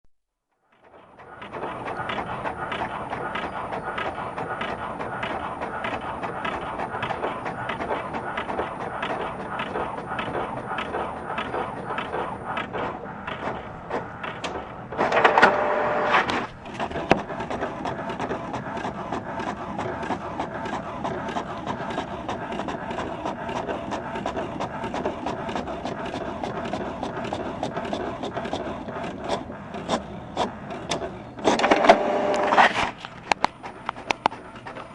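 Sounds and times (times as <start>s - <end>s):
steady hum: 0.8s - 28.4s
printer clattering: 0.8s - 34.9s.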